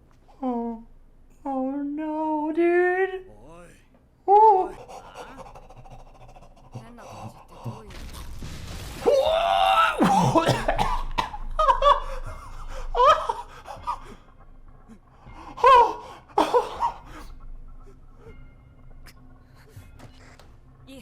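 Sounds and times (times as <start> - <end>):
person laughing: 4.7 - 7.9, 11.4 - 14.1
person gasping and breathing: 4.7 - 8.0, 12.0 - 14.3, 15.2 - 17.4.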